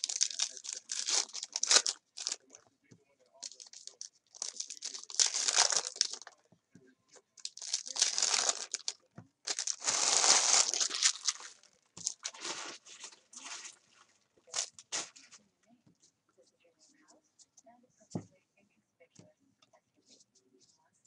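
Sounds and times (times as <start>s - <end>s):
card pack wrappers tearing and crinkling: 0.0s - 2.6s, 3.4s - 6.3s, 7.4s - 13.6s, 14.6s - 15.1s.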